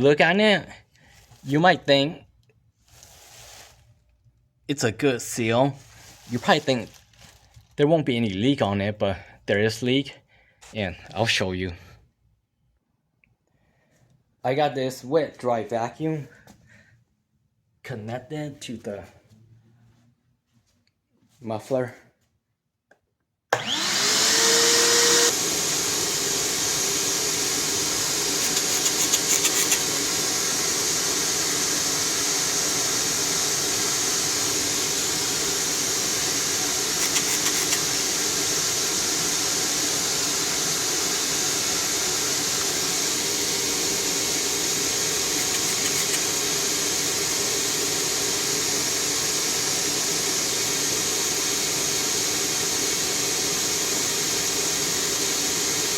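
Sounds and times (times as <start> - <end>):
shop vacuum motor whining: 23.5 - 55.9.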